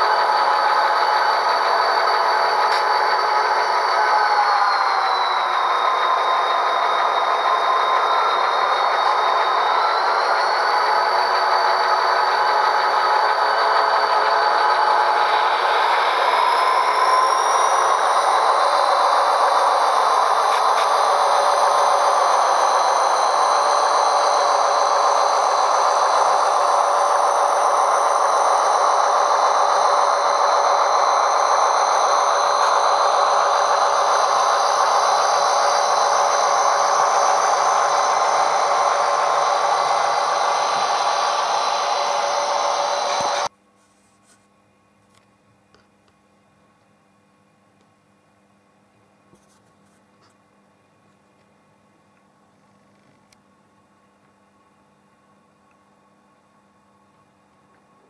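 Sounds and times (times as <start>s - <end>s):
model locomotive engine sound: 0.0s - 43.5s.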